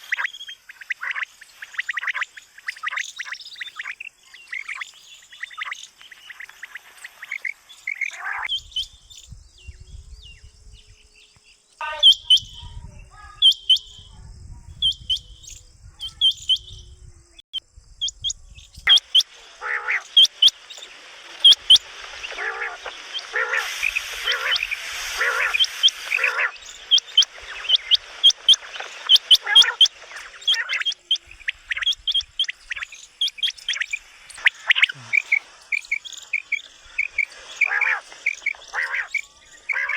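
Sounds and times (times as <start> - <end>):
birds chattering: 0.0 - 9.9, 11.1 - 14.2, 18.0 - 39.9
quail calling: 5.4 - 8.6, 18.9 - 39.9.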